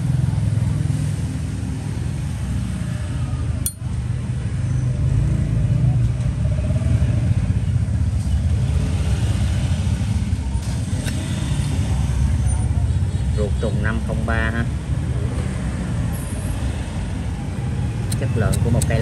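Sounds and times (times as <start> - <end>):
low rumble of motor traffic: 0.0 - 19.0.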